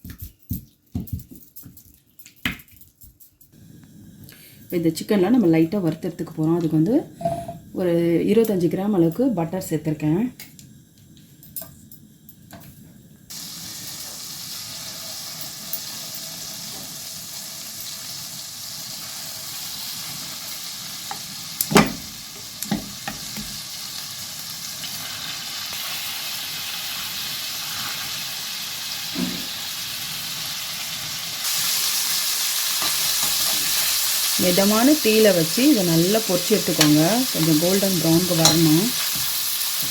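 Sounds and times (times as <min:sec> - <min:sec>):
chicken sizzling in a pan: 0:13.3 - 0:39.9.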